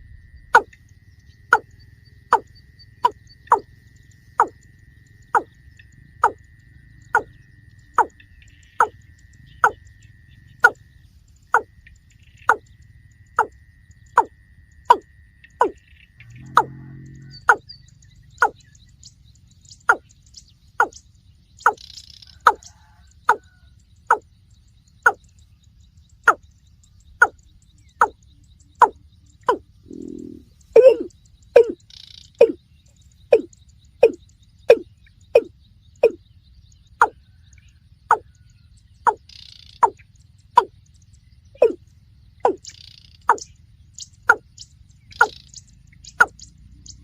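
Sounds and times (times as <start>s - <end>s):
bird calling falling notes: 29.5s - 31.8s, 32.4s - 32.6s.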